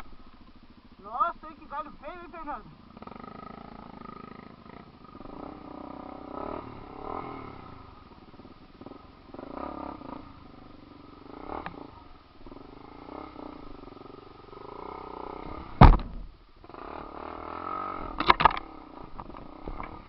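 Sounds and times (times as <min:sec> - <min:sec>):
off-road engine revving: 0:00.0 - 0:20.0
sharp knock: 0:15.8 - 0:16.3.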